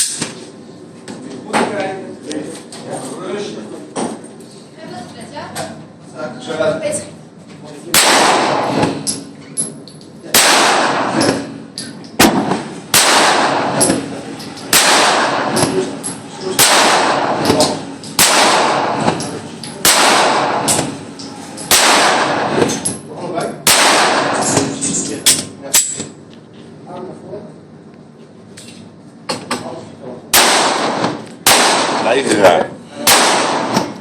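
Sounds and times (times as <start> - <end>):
loud pistol shots echoing: 7.9 - 9.0, 10.3 - 11.4, 12.2 - 14.0, 14.7 - 15.8, 16.6 - 21.0, 21.7 - 22.6, 23.6 - 24.7, 30.3 - 32.2, 33.0 - 33.9.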